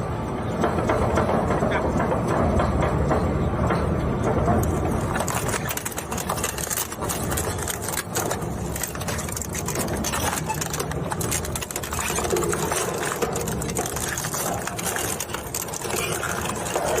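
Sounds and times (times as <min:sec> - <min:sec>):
plastic being torn and crushed: 0:05.0 - 0:17.0.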